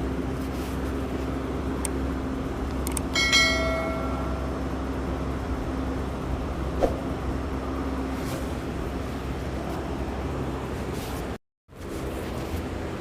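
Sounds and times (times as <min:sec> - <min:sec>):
steady low hum: 0:00.0 - 0:13.0
bell-like metallic ring: 0:03.2 - 0:04.6.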